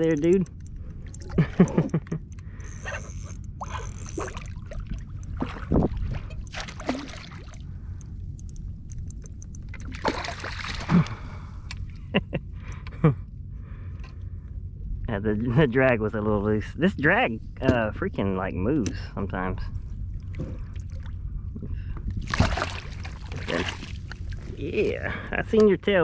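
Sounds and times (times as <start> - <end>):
water sloshing and splashing: 0.0 - 2.0, 2.7 - 12.0, 19.7 - 25.0.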